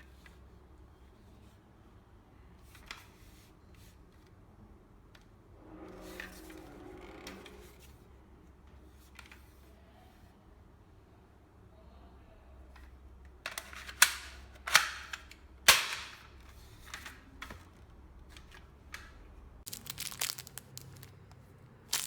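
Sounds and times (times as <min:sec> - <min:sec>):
plastic rattling: 0:19.7 - 0:22.0.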